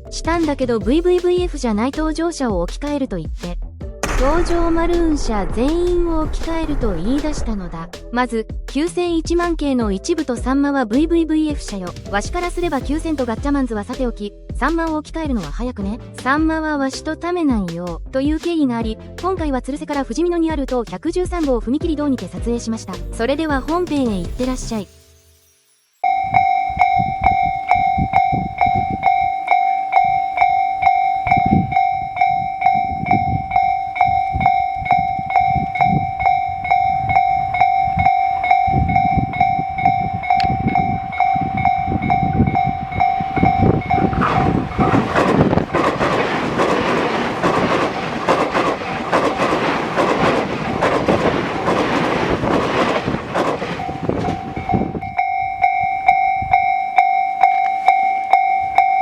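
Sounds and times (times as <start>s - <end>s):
electric train passing: 26.0s - 59.0s
level-crossing bell clanging: 26.0s - 59.0s.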